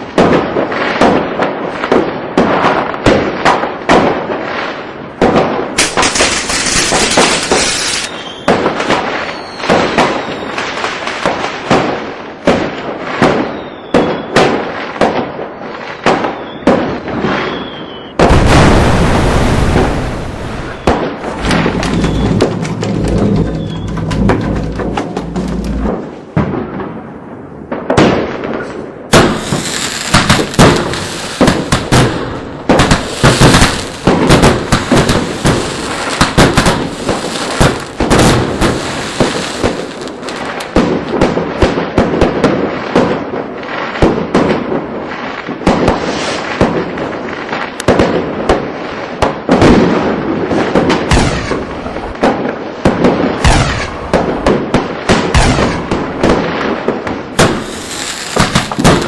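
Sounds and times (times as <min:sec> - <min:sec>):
fireworks bangs: 0:00.0 - 0:59.0
hissing crackle: 0:05.8 - 0:08.2, 0:18.6 - 0:26.1, 0:29.1 - 0:40.8, 0:57.4 - 0:59.0.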